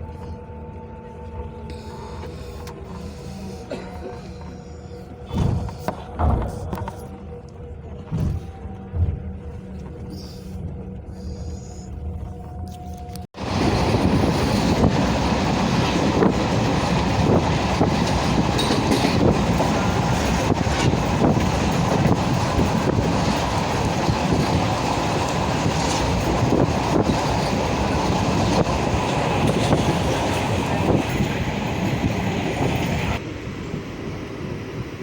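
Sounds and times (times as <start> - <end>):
rail joint clicks: 12.0 - 33.2
train wheels rumbling on track: 13.4 - 35.0.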